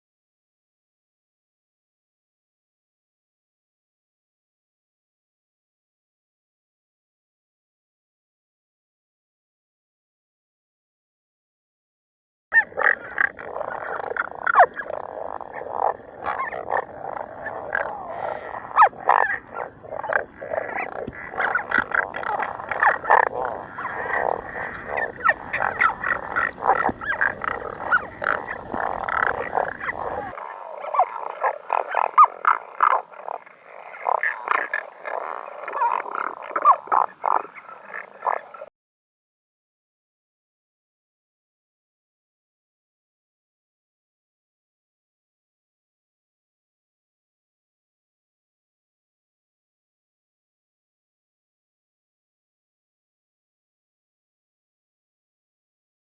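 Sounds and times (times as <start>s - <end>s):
frogs croaking: 12.6s - 38.7s.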